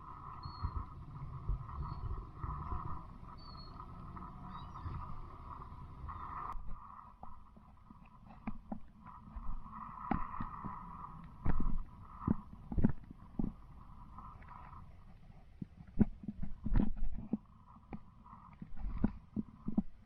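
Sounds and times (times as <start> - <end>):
low rumble: 0.0 - 7.9.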